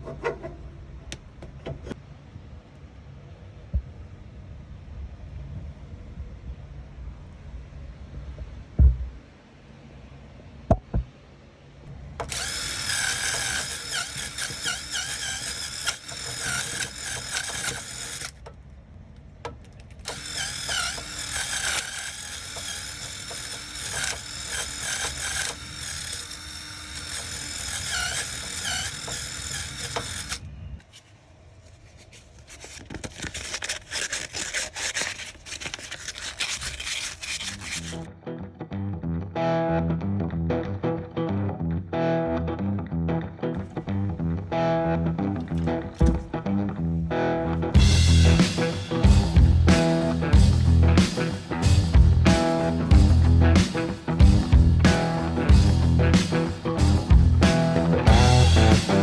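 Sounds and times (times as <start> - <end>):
handheld power tool running: 12.2 - 18.4, 20.0 - 30.4, 32.5 - 38.1, 47.8 - 59.0
rapid clicking: 12.2 - 18.6, 19.5 - 30.4.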